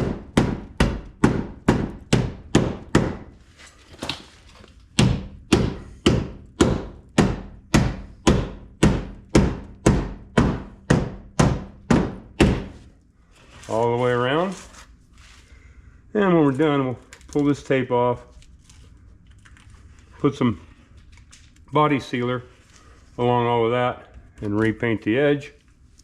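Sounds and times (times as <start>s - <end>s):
hammer striking sheet metal: 5.0s - 12.8s.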